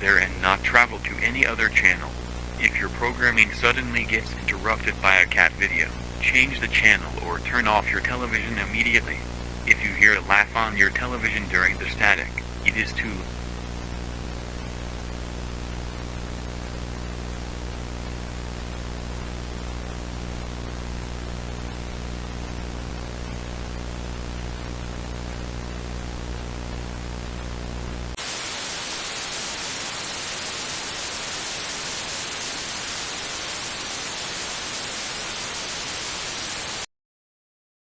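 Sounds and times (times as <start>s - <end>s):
electrical hum: 0.0s - 36.5s
television static hiss: 0.0s - 36.9s
hiss: 28.2s - 36.8s.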